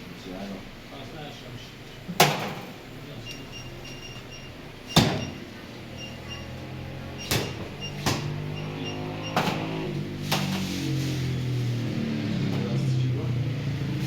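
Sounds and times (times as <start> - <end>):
sharp knocks: 7.3 - 8.4.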